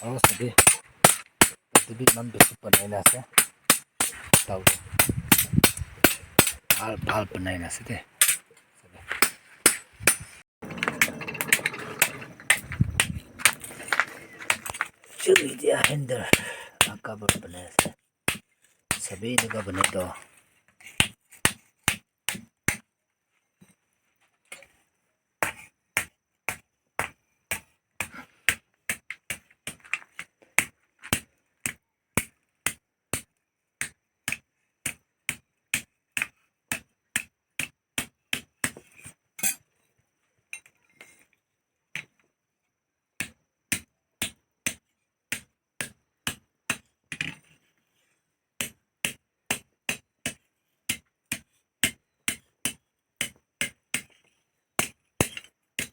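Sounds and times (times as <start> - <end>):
hammer striking metal on anvil: 0.0 - 6.9.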